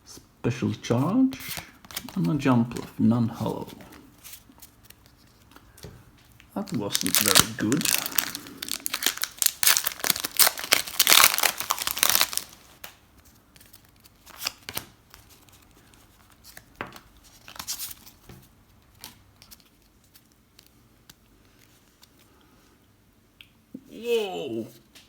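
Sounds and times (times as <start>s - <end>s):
foil wrapper tearing and crinkling: 6.6s - 12.9s.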